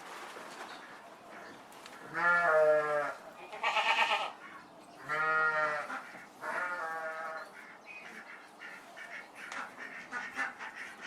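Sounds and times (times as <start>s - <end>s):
animal bleating: 2.1s - 4.4s, 5.0s - 7.4s.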